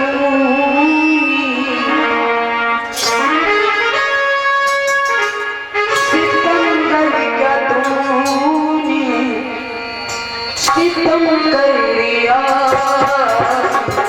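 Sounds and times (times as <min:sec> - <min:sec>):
sharp drum strikes: 0:12.4 - 0:14.0.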